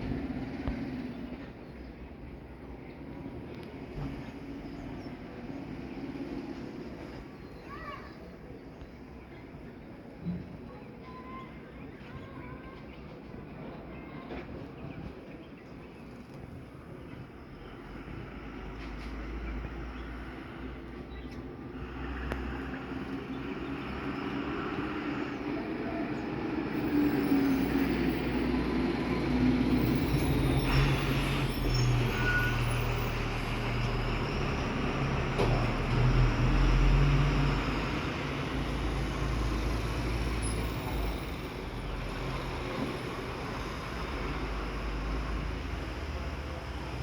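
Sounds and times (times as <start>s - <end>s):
heavy vehicle engine humming: 17.3s - 47.0s.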